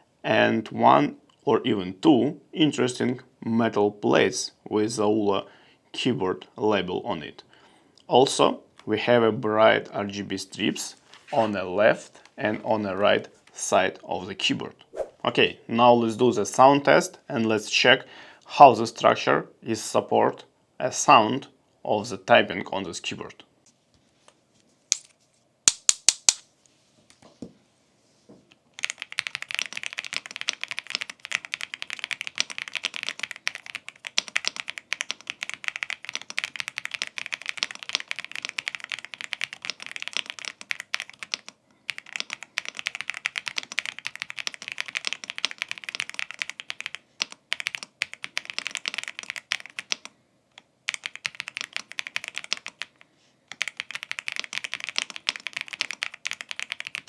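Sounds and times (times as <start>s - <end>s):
fast typing on mechanical keyboard: 28.8s - 50.1s, 50.8s - 57.0s.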